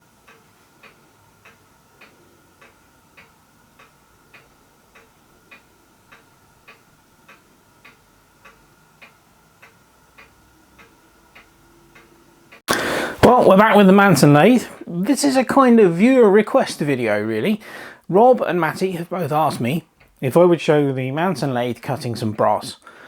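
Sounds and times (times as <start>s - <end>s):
faint regular ticking: 0.0s - 23.0s
faint steady hum: 0.0s - 23.0s.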